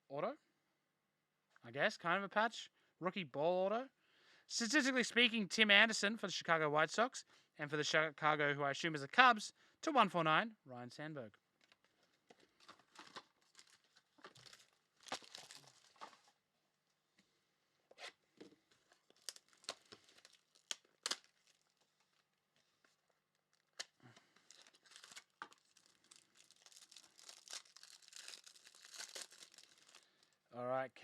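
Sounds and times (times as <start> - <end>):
card pack wrappers crinkling: 12.4 - 16.4, 18.7 - 30.3
wrapper snaps: 12.6 - 16.3, 18.8 - 22.2, 23.4 - 30.1.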